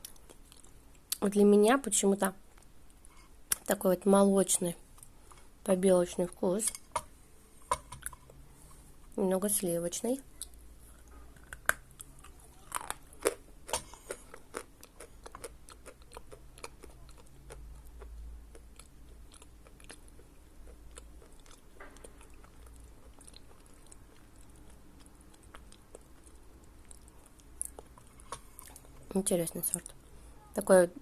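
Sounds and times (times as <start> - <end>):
person chewing chalk: 10.4 - 29.0.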